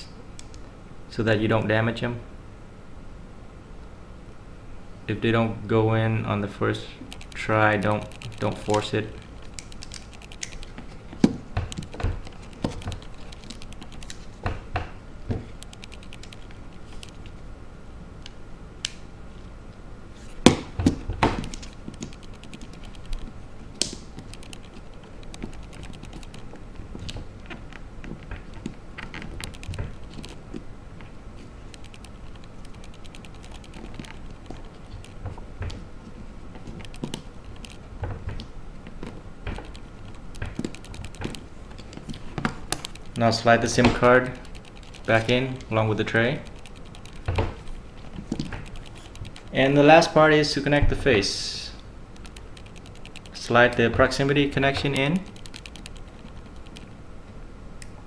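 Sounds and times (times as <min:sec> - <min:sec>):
small tools clicking and tapping: 0:36.6 - 0:43.2.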